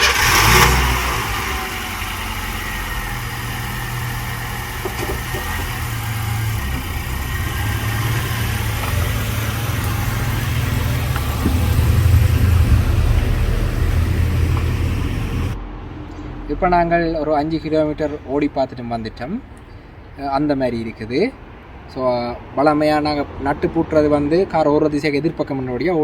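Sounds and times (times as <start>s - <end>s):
car engine running: 0.0s - 15.6s.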